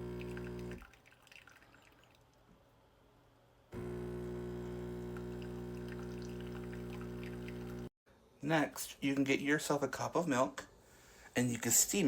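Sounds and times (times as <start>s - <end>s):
espresso machine pump humming: 0.0s - 0.8s, 3.8s - 7.9s
coffee dripping into a cup: 4.5s - 7.9s.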